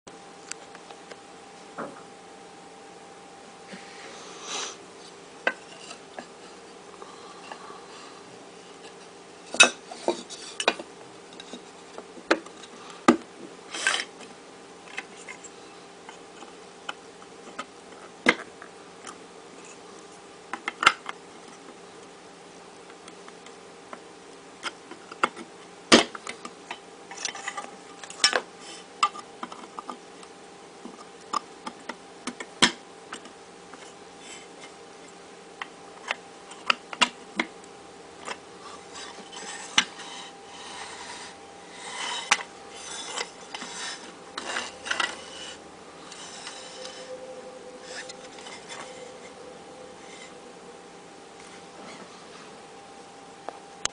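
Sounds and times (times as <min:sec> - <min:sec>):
faint hum: 0:00.1 - 0:53.9
scraping and rustling: 0:03.7 - 0:12.9, 0:38.2 - 0:50.8.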